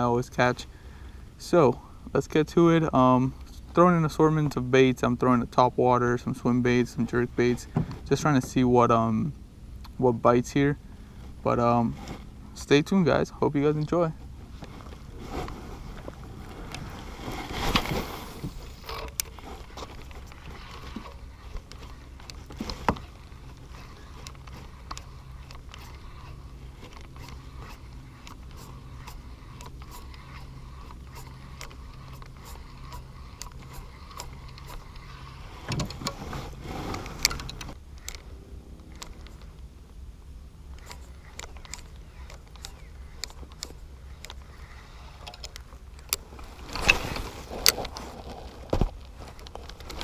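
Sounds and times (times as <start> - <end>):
low hum: 0.0 - 50.0.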